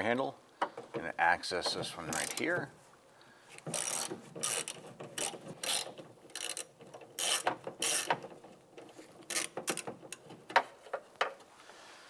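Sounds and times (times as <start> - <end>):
socket ratchet clicking: 3.6 - 8.2.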